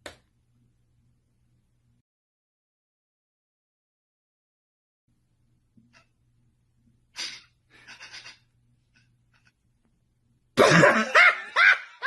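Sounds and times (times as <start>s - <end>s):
low steady hum: 0.0s - 2.0s, 5.1s - 11.8s.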